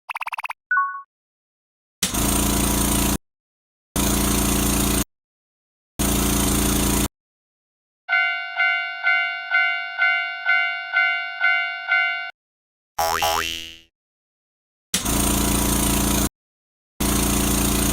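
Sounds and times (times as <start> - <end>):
railroad crossing bell ringing: 8.1 - 12.4.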